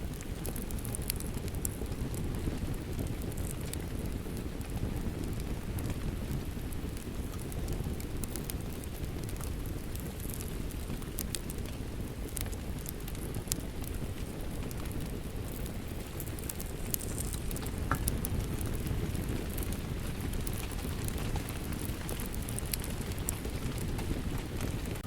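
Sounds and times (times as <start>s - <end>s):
fireplace crackling and popping: 0.0s - 25.0s
falling rain: 13.3s - 25.0s.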